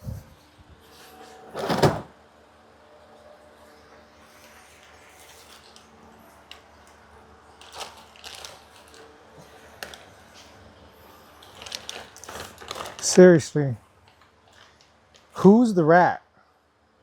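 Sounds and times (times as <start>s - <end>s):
small items clicking and rustling: 7.6s - 10.5s, 11.4s - 13.2s.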